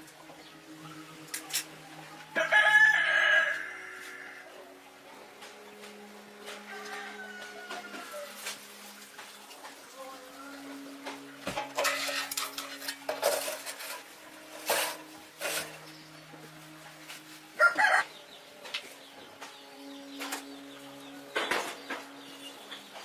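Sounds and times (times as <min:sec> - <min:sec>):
sharp knocks and clatter: 0:11.0 - 0:14.0, 0:21.3 - 0:22.2.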